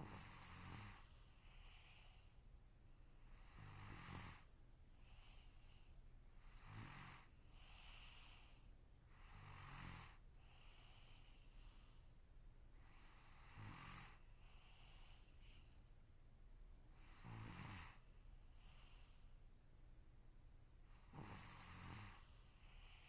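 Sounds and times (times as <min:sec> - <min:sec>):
person snoring faintly: 0:00.0 - 0:02.3, 0:03.3 - 0:05.6, 0:06.4 - 0:11.9, 0:12.8 - 0:15.5, 0:17.0 - 0:19.2, 0:21.0 - 0:23.0
soft airy breath: 0:00.0 - 0:16.0, 0:16.9 - 0:19.6, 0:20.8 - 0:23.0.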